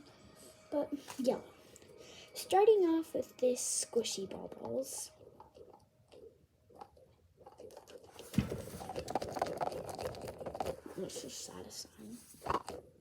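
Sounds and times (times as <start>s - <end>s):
stress ball squishing: 4.5s - 13.0s
thump: 8.3s - 9.0s.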